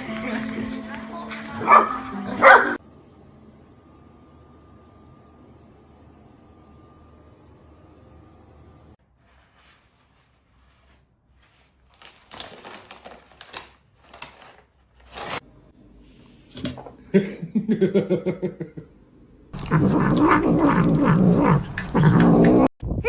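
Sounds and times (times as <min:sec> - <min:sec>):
rustling scrapes: 0:09.0 - 0:15.4.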